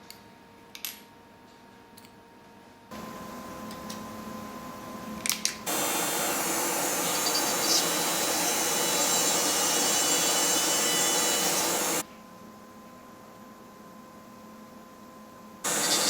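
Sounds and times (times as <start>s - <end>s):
small motor humming: 5.7s - 12.0s, 15.7s - 16.0s.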